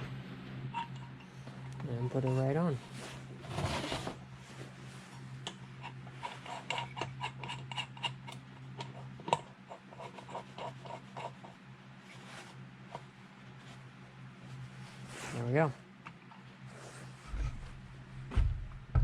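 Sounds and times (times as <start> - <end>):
low steady hum: 0.0 - 19.0
metal scrape: 16.8 - 17.8.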